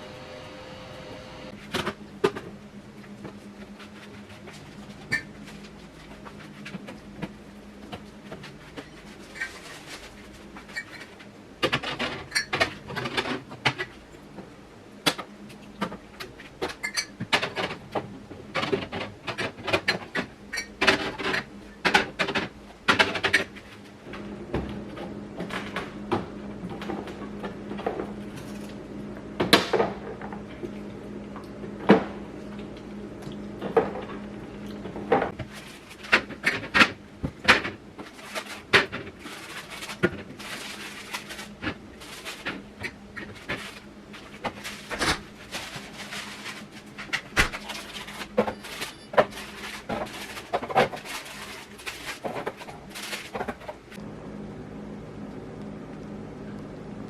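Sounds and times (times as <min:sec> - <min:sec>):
steady low hum: 0:00.0 - 0:57.0
household objects clattering: 0:35.0 - 0:53.9.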